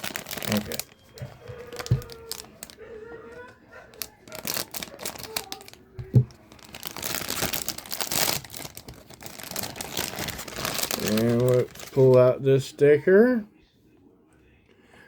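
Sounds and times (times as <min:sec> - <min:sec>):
plastic packaging crinkling and tearing: 0:00.0 - 0:02.8, 0:03.4 - 0:12.4.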